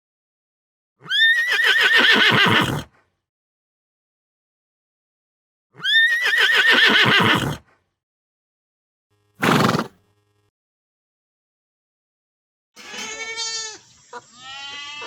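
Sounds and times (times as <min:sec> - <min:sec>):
horse whinnying: 0:01.0 - 0:02.9, 0:05.8 - 0:07.6, 0:09.4 - 0:09.9.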